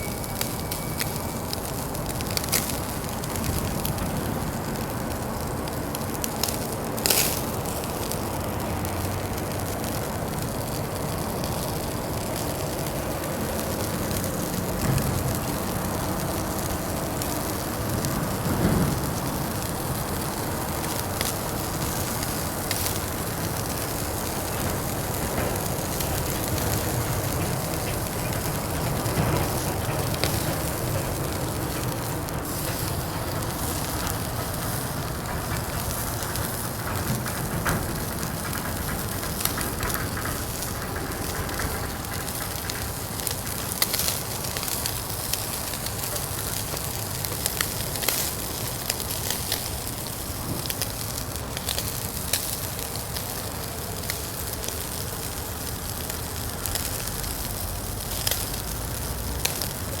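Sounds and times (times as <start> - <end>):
fire crackling and popping: 0.0 - 60.0.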